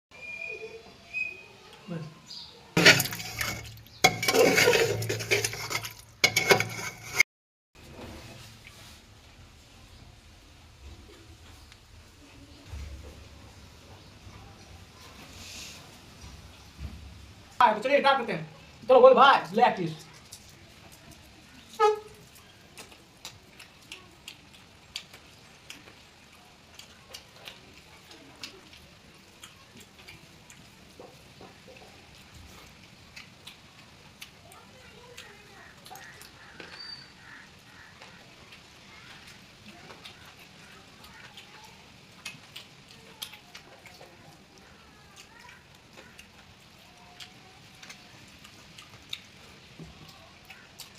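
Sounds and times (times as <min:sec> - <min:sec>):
dishes and spoon clattering: 0:02.8 - 0:07.2
chewing and utensil clicks: 0:22.3 - 0:37.1, 0:37.7 - 0:50.9.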